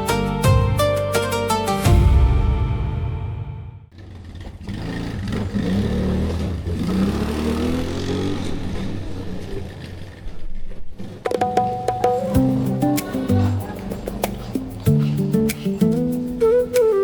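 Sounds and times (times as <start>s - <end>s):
music with plucked notes: 0.0s - 3.3s, 11.3s - 17.0s
quad bike engine revving: 3.9s - 10.2s.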